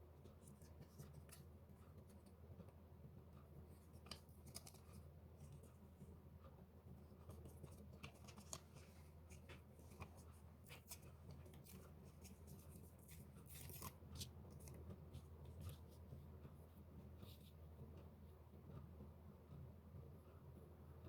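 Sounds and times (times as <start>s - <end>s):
low steady hum: 0.0s - 21.0s
paper rustling and snipping: 3.8s - 5.7s, 7.2s - 16.0s.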